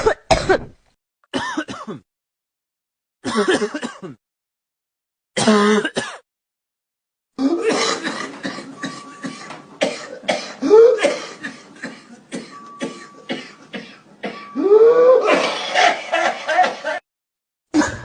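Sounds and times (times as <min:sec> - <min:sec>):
repeated coughing: 0:00.0 - 0:02.1, 0:03.2 - 0:04.2, 0:05.4 - 0:06.2, 0:07.4 - 0:14.6.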